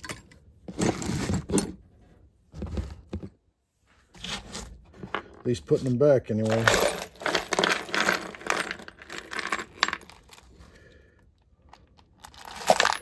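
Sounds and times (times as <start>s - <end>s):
metal screws clinking and rattling: 6.4s - 10.5s, 12.2s - 13.0s.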